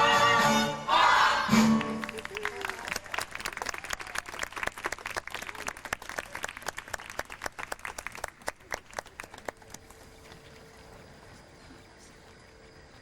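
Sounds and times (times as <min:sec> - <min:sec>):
audience applauding: 0:01.8 - 0:10.4.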